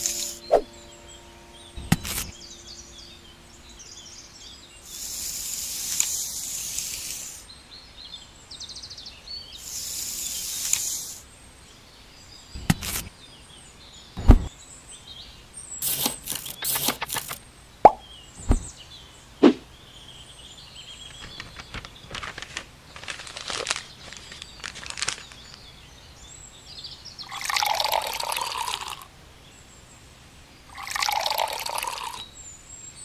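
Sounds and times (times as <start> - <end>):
hissing bursts: 0.0 - 0.7, 4.8 - 7.5, 9.6 - 11.2, 12.6 - 13.1, 15.8 - 17.4
small birds chirping: 0.0 - 33.0.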